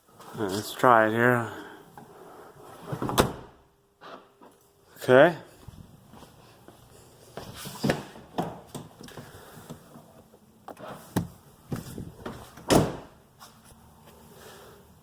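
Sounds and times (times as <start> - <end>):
rear hatch knocks and clunks: 11.1 - 13.2.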